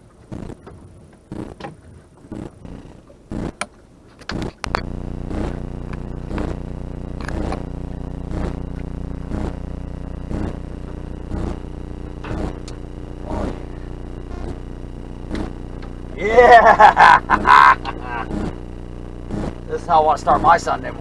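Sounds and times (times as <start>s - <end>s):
small boat motor running: 0.4s - 21.0s.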